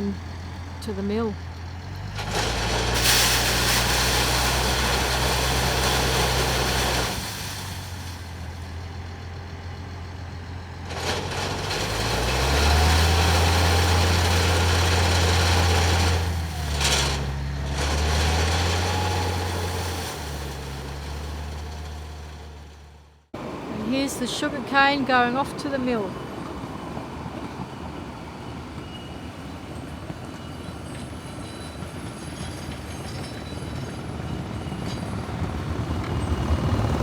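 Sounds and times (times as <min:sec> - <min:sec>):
heavy diesel engine revving: 0:00.0 - 0:23.7, 0:35.5 - 0:37.0.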